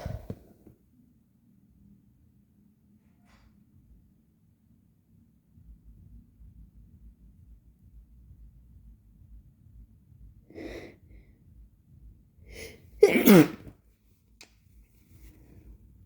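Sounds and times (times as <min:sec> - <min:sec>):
person sneezing: 0:00.0 - 0:00.4, 0:12.6 - 0:13.7.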